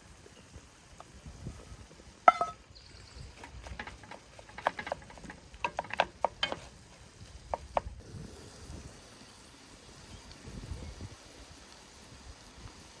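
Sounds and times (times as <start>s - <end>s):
metal utensil striking pan: 2.3s - 2.6s
utensil tapping and clicking: 3.7s - 6.7s.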